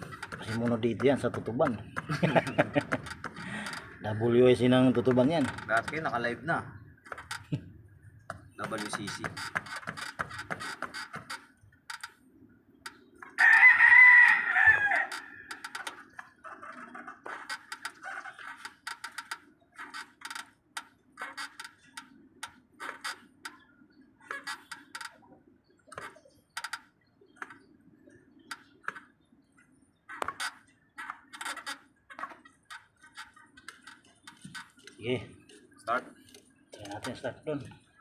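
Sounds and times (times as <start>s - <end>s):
rooster crowing: 13.4s - 15.7s.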